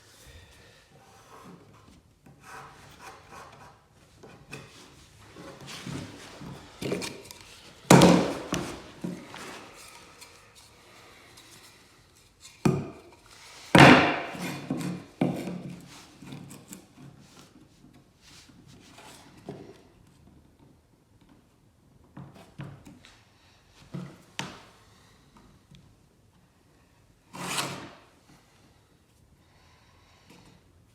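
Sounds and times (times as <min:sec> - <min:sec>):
wooden boards scraping: 0:04.5 - 0:10.2.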